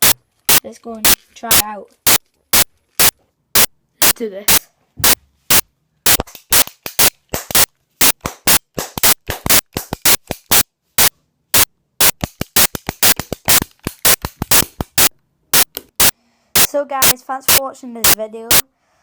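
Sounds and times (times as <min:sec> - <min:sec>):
toy cap gun popping: 0:00.0 - 0:18.6.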